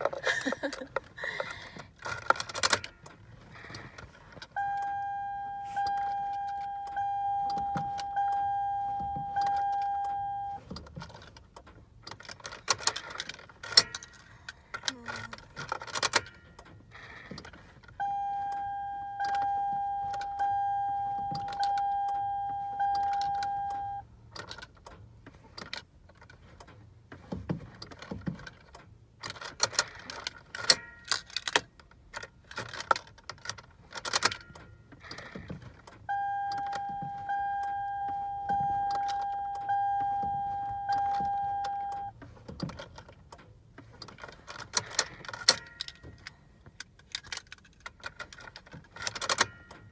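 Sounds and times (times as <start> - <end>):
key clicking in ignition: 0.0 - 49.9
dashboard warning chime dings: 4.5 - 10.7, 16.1 - 17.1, 17.9 - 24.1, 30.6 - 31.4, 34.2 - 42.2, 45.1 - 46.6, 49.2 - 49.9.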